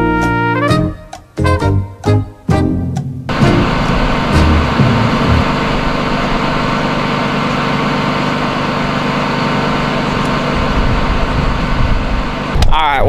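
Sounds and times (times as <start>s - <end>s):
engine droning steadily: 3.3s - 13.0s.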